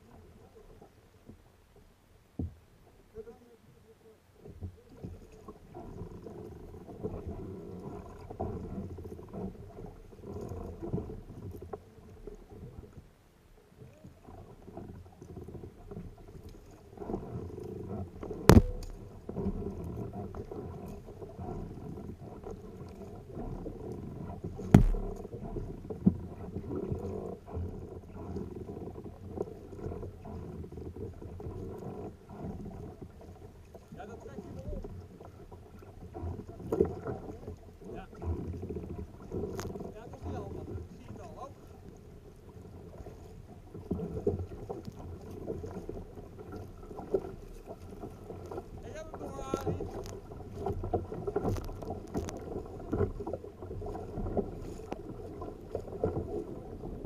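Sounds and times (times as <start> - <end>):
kayak sloshing on water: 0.0 - 57.0
sharp knocks: 18.5 - 19.1, 24.7 - 25.2.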